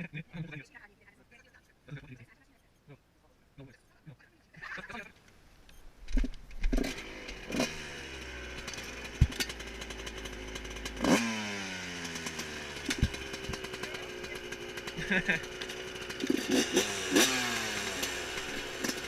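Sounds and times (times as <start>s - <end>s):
motorcycle engine revving and idling: 6.6s - 19.0s.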